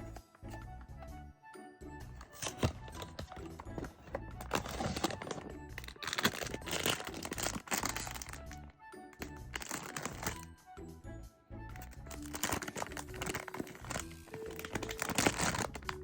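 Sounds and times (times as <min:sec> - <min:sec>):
background music: 0:00.0 - 0:16.0
packaging crinkling and crackling: 0:02.2 - 0:10.4, 0:11.8 - 0:16.0.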